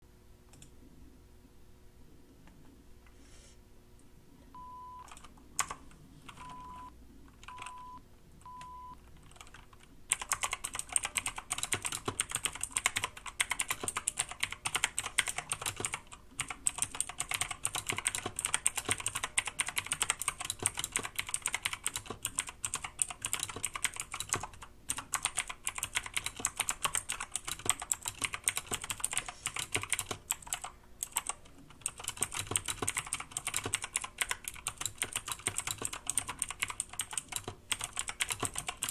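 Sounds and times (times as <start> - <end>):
short beeps: 4.6 - 5.0, 6.4 - 9.0
mechanical keyboard clicks: 5.0 - 38.9.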